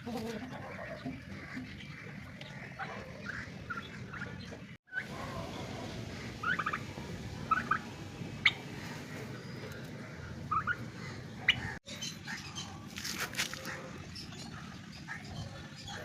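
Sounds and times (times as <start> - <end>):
bird calls: 0.0 - 16.0
steady low background noise: 1.4 - 12.8.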